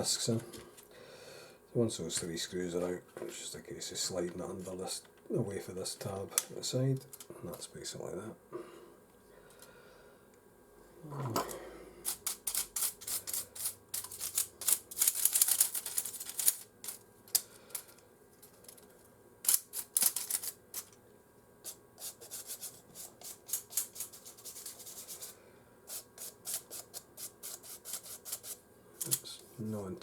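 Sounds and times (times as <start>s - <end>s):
sharp clicks and rattles of parts: 6.1s - 7.3s, 12.1s - 21.0s, 29.0s - 29.4s
plastic parts scraping: 12.1s - 21.0s.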